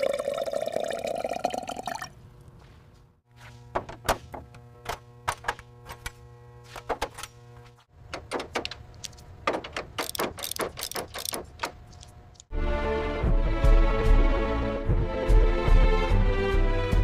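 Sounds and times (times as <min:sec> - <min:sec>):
steady mechanical hum: 0:02.1 - 0:12.5
sharp clicks and knocks: 0:08.0 - 0:12.5.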